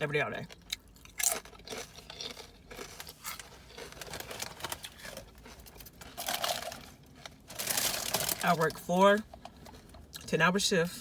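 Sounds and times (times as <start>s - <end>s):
paper wrapper crinkling: 1.4s - 8.9s.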